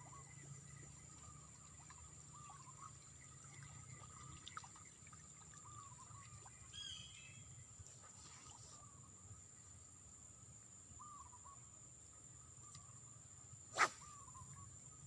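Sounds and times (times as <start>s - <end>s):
bird chirps: 5.6s - 7.5s.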